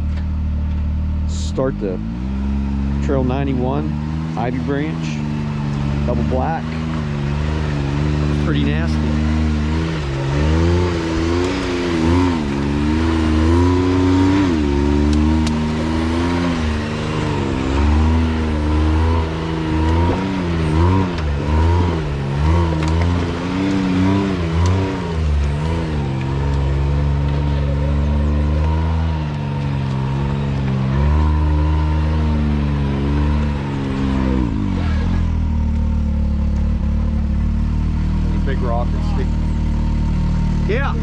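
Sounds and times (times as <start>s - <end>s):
engine revving in throttle blips: 0.0s - 41.0s.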